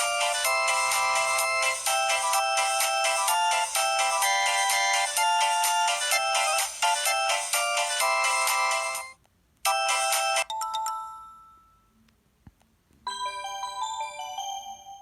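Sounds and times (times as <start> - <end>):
electronic ringtone melody: 0.0 - 11.9, 13.1 - 15.0
bell-like ringtone tune: 0.0 - 12.0, 13.1 - 15.0.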